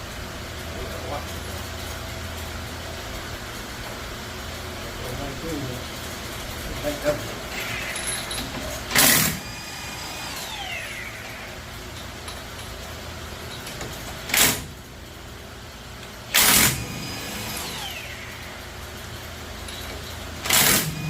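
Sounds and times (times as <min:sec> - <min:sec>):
impact wrench bursts: 0:07.5 - 0:12.2, 0:13.7 - 0:14.8, 0:16.3 - 0:19.1, 0:19.7 - 0:21.0.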